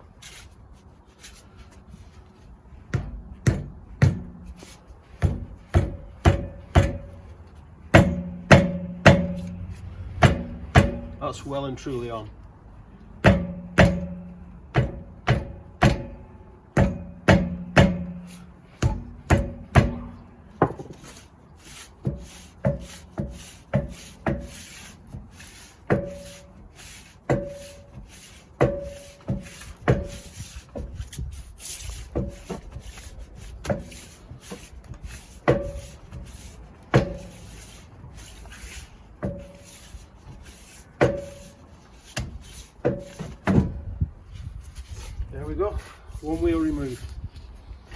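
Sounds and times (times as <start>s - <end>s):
hard blows on metal wheel ringing: 5.2s - 11.6s, 13.2s - 21.0s, 22.0s - 31.4s, 33.6s - 37.8s, 39.2s - 44.2s.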